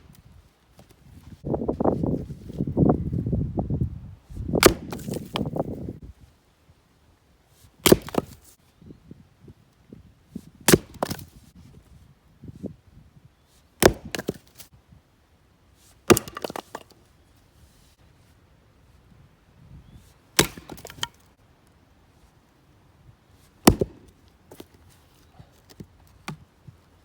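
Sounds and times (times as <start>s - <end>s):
axe splitting wood: 4.6s - 5.6s, 7.8s - 8.4s, 10.7s - 11.3s, 13.8s - 14.6s, 16.1s - 16.9s, 20.4s - 21.2s, 23.6s - 24.7s.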